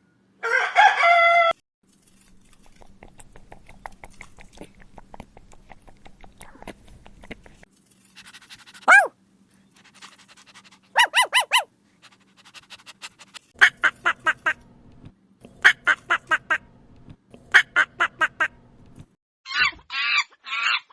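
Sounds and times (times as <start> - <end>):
poultry calling: 8.8 - 9.1, 10.8 - 11.7.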